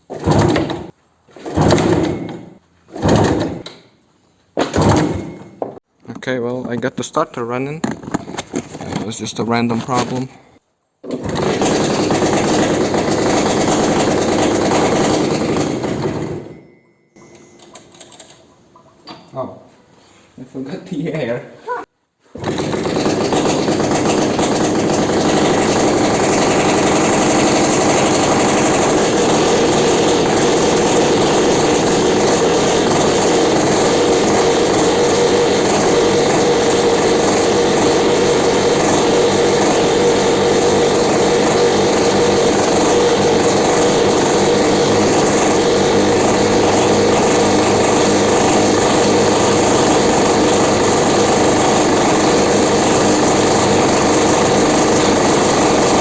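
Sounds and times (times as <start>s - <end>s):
tractor engine running: 11.2s - 16.5s, 22.5s - 56.0s.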